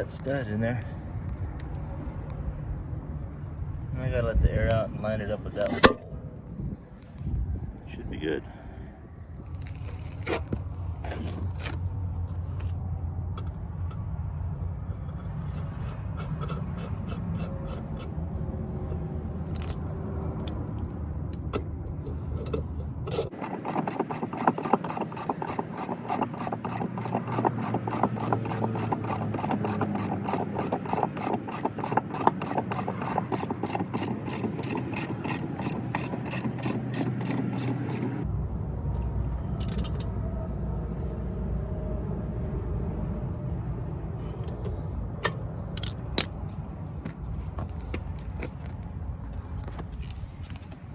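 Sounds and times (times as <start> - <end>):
ratchet wrench clicking: 22.4 - 38.2
scattered knocks: 23.1 - 38.2.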